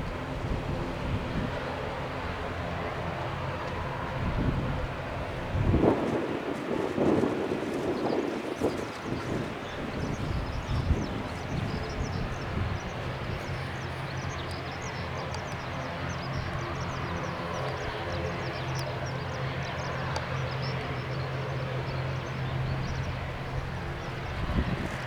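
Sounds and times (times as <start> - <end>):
jet engines running: 0.0 - 25.0.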